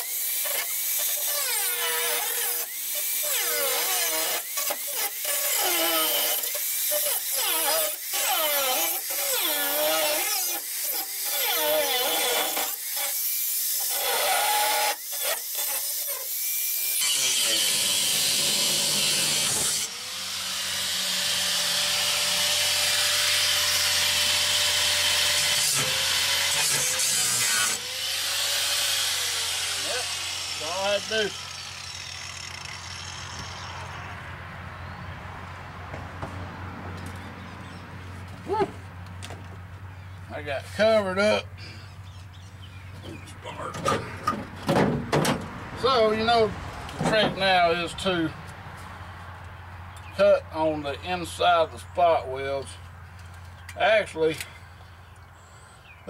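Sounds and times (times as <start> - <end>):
abrasive cutting wheel slicing steel: 0.0 - 34.1.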